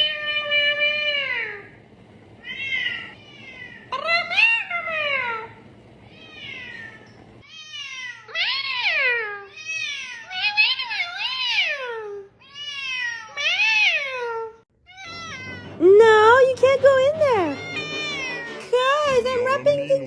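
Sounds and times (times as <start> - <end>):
cat meowing: 2.4 - 3.9, 6.1 - 15.8, 17.2 - 19.3.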